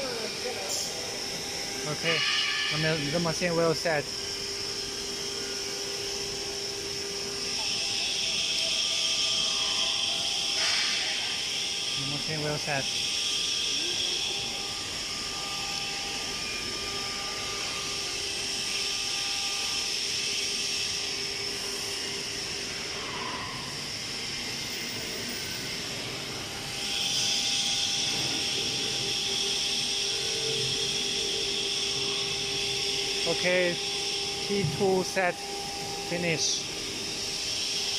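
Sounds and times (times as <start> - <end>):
router machine whine: 0.0 - 37.9.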